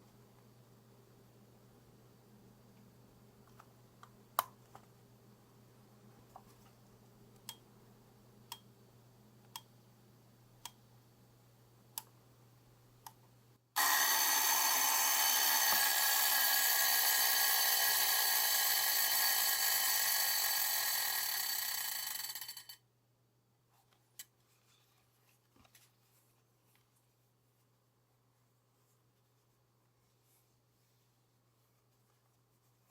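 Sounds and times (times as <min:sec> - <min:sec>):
alarm clock buzzing ring: 0:13.8 - 0:22.8.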